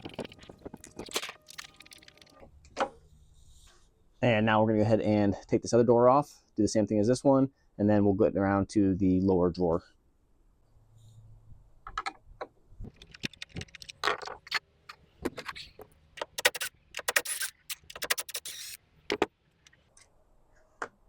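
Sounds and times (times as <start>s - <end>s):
metallic clicks and rattles: 12.9s - 14.6s.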